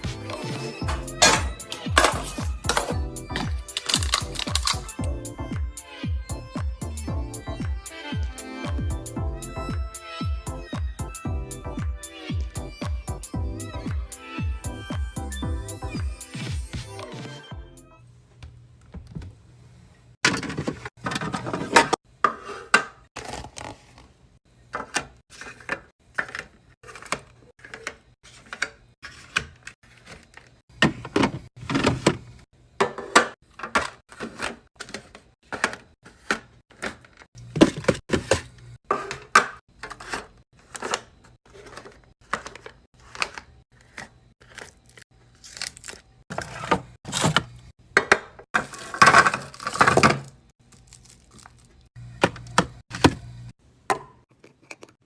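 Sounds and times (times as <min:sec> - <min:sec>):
containers clunking on fridge shelves: 0:00.8 - 0:04.7, 0:20.2 - 0:24.1, 0:24.7 - 0:29.6, 0:30.2 - 0:44.1, 0:46.3 - 0:50.4, 0:52.0 - 0:53.3, 0:53.9 - 0:55.0.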